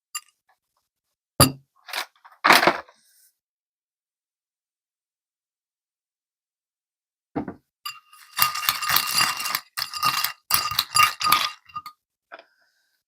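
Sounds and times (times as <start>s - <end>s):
knock: 7.4s - 7.6s
dry cereal pouring into a bowl: 8.2s - 11.8s.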